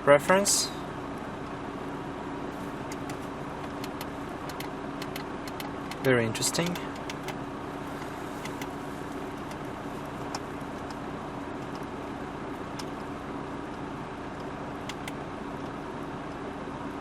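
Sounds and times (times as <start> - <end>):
car engine idling: 0.9 - 17.0.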